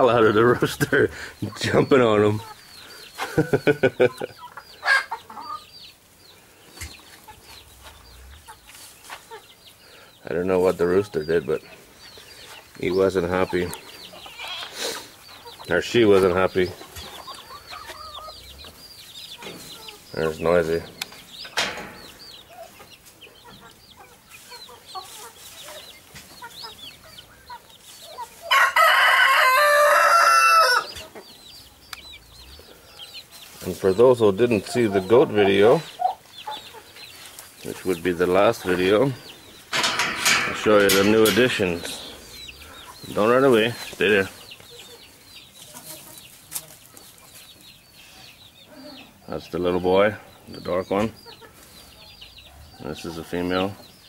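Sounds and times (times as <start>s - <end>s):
chickens clucking: 0.0s - 54.0s
rooster crowing: 28.5s - 30.9s.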